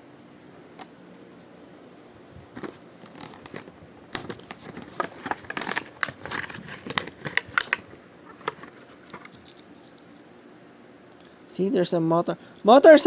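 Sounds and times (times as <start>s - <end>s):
plastic blister pack crinkling: 2.5s - 9.6s.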